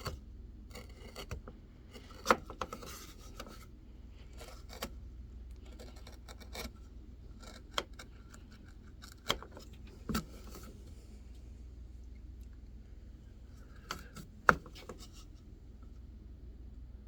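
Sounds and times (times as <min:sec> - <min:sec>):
wood carving clicks and scrapes: 0:00.0 - 0:11.4, 0:13.5 - 0:15.5.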